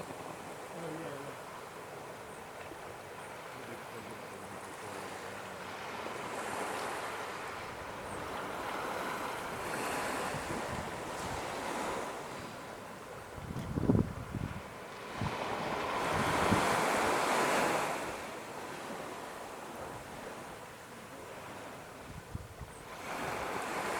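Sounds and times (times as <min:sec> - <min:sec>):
ocean surf washing on beach: 0:00.0 - 0:23.9
wind on microphone: 0:06.0 - 0:18.3, 0:21.6 - 0:23.9.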